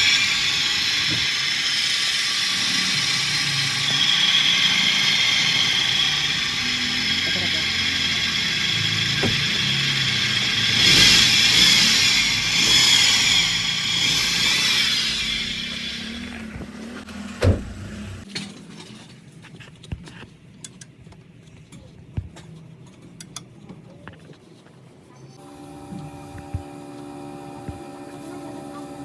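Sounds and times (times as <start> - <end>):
car engine with grinding bearing: 0.0 - 18.3.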